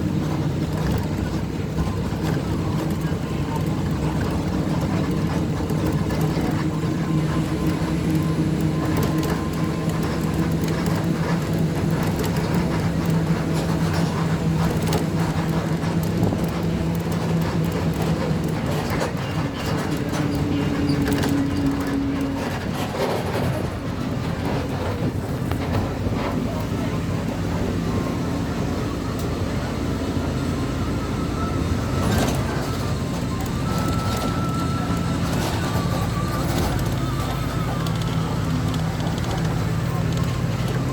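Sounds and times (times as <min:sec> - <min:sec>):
road noise: 0:00.0 - 0:40.9
vehicle engine hum: 0:00.0 - 0:40.9.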